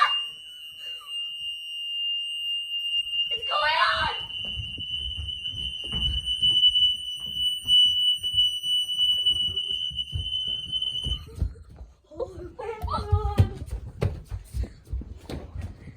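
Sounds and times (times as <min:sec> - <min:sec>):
fire alarm high-pitched tone: 0:00.0 - 0:11.7.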